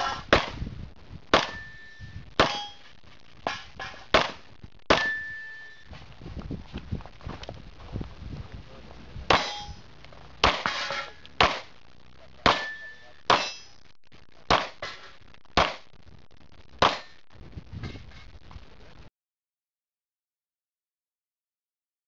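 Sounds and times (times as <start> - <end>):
pistol shots: 1.3 - 1.6, 10.4 - 11.8, 12.4 - 13.6, 14.5 - 14.9, 15.6 - 15.9, 16.8 - 17.1
steel targets ringing: 1.4 - 4.3, 4.9 - 5.9, 9.3 - 11.6, 12.4 - 13.8.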